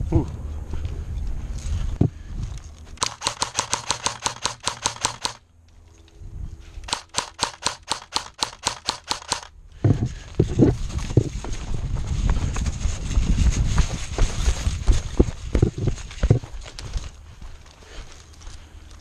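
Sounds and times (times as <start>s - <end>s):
rustling: 1.4s - 19.0s
airsoft gun firing bursts: 3.0s - 5.4s, 6.8s - 9.5s
heavy thumps: 9.8s - 11.6s, 14.2s - 16.5s.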